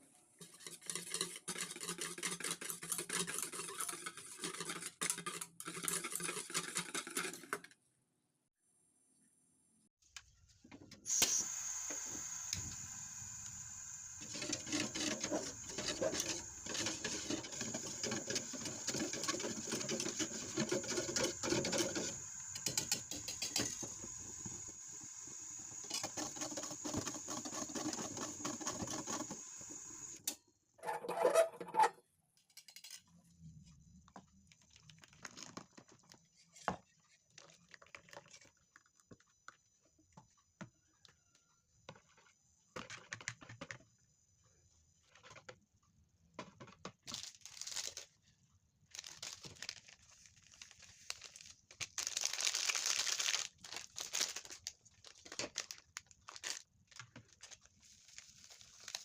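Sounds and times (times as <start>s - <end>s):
steady high hiss: 11.1s - 18.0s, 20.4s - 30.2s
rapid clicking and scraping: 14.2s - 24.7s, 25.8s - 30.2s.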